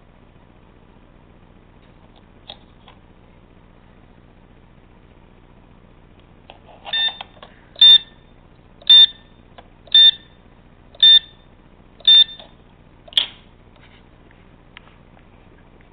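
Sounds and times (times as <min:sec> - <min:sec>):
short electronic beeps: 0:06.9 - 0:07.2, 0:07.8 - 0:08.2, 0:08.8 - 0:09.3, 0:09.9 - 0:10.4, 0:11.0 - 0:11.4, 0:12.0 - 0:12.5
sharp click: 0:13.1 - 0:13.4.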